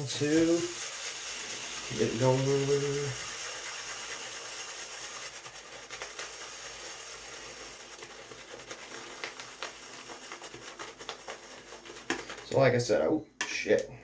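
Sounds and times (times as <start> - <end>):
shaving brush swishing in bowl: 0.0 - 13.0.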